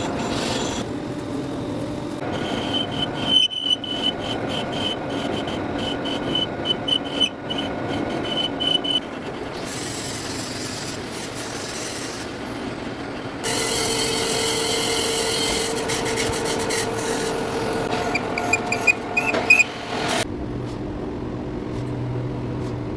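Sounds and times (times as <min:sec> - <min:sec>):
lathe cutting metal: 0:00.0 - 0:20.2
short sharp squeaks: 0:02.4 - 0:09.1, 0:14.8 - 0:19.7
low machine hum: 0:12.6 - 0:22.9.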